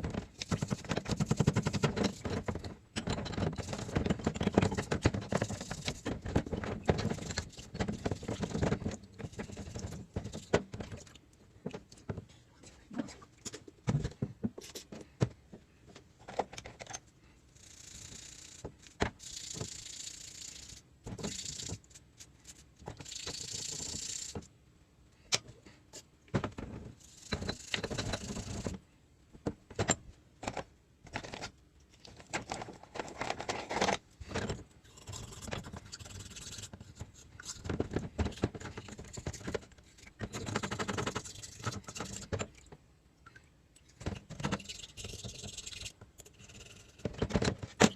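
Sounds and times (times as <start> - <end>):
metal parts and tools handled: 0.1 - 11.0, 27.0 - 28.8, 29.7 - 42.6.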